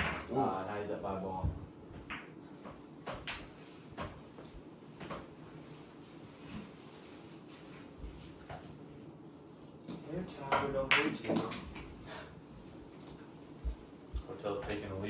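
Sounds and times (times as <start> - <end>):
pool balls and cue knocking: 0.0 - 0.4, 1.4 - 5.4, 9.9 - 14.8.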